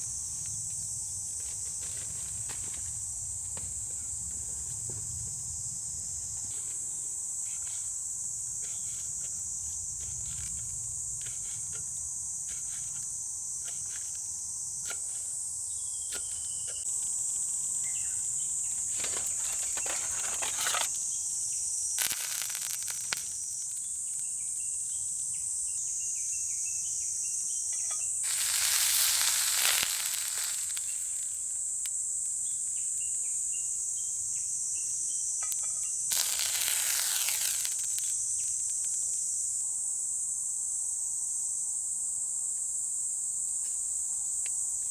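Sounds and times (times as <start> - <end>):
high-pitched insect chorus: 0.0 - 44.9
rushing hiss: 22.0 - 23.6, 28.2 - 32.0, 36.0 - 38.6.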